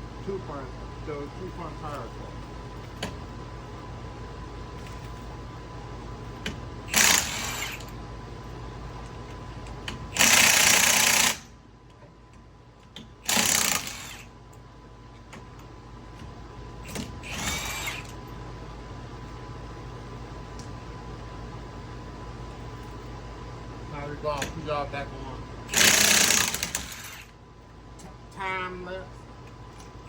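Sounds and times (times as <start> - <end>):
impact wrench bursts: 6.9 - 7.9, 10.1 - 11.5, 13.2 - 14.3, 16.9 - 18.1, 25.7 - 27.3.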